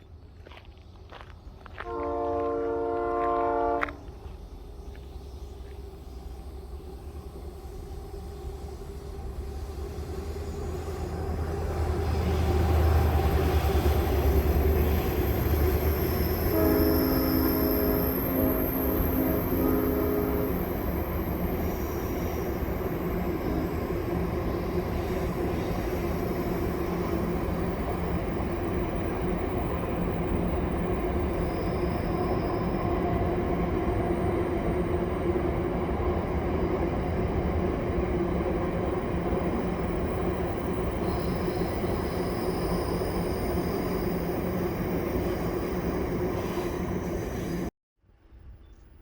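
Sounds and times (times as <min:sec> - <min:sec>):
faint wheel squeal: 0:40.9 - 0:47.7.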